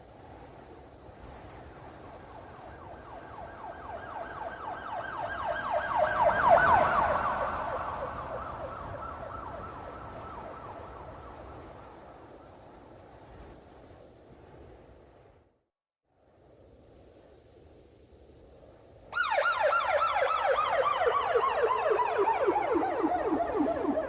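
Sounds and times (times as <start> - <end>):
police siren yelping: 2.8 - 11.3, 19.2 - 24.0.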